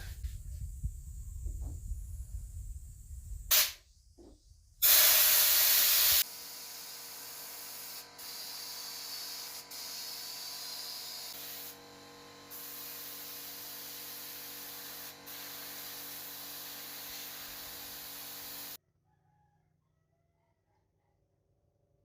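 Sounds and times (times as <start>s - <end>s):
spray gun hissing: 3.5s - 3.8s, 4.8s - 11.8s, 12.5s - 18.8s.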